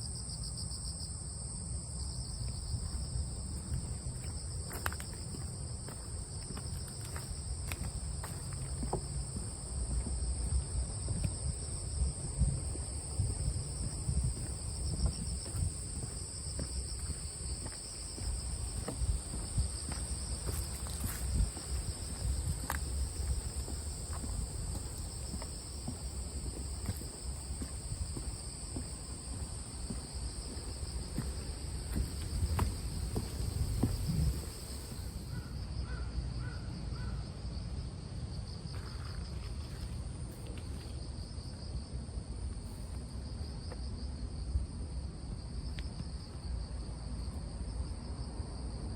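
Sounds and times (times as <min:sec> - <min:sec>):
insects trilling: 0:01.9 - 0:37.6
low irregular rumble: 0:03.4 - 0:35.3.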